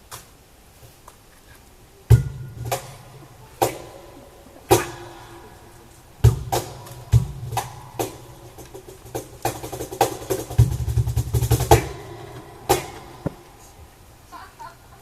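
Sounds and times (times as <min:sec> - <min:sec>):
sparse percussive music: 0:02.1 - 0:14.0.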